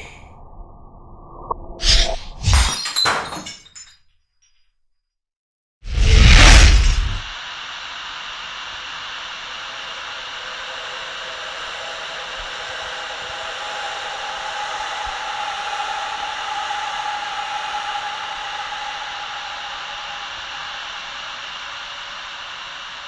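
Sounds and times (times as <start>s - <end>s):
static-like hiss drone: 7.3s - 14.0s.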